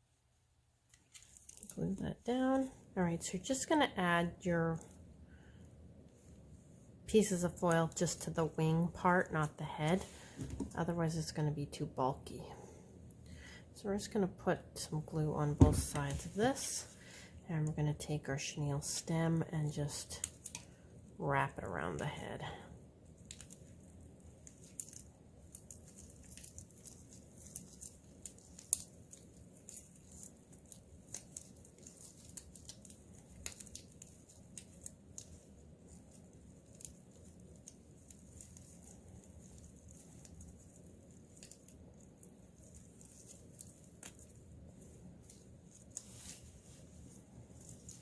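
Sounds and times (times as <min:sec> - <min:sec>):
hands rustling craft materials: 0:00.8 - 0:03.6, 0:23.0 - 0:48.0.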